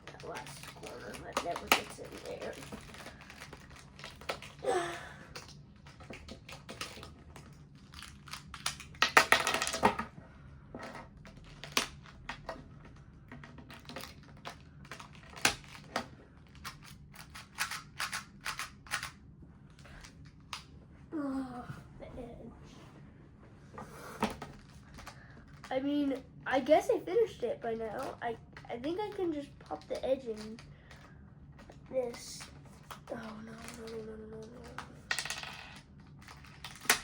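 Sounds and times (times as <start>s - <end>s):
plastic cube pieces clicking: 7.8s - 9.9s, 13.6s - 19.2s.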